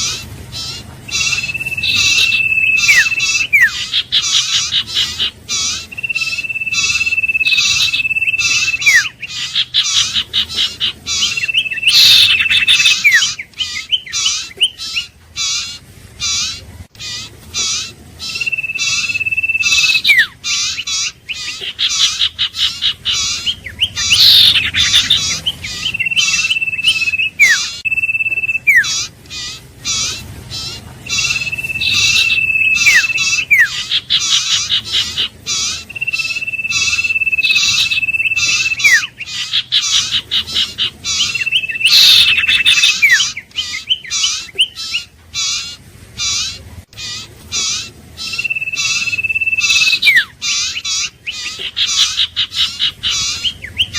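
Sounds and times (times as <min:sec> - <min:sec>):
bird chirping: 0:00.0 - 0:53.9
bird whistling with downward slur: 0:01.1 - 0:05.0, 0:05.8 - 0:10.0, 0:11.2 - 0:15.0, 0:18.2 - 0:20.4, 0:23.4 - 0:29.0, 0:31.1 - 0:34.4, 0:35.8 - 0:39.2, 0:41.2 - 0:44.9, 0:48.2 - 0:50.3.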